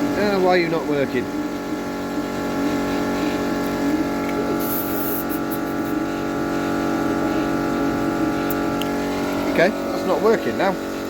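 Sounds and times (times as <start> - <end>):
motor humming: 0.0 - 11.0
air hiss: 4.6 - 6.0.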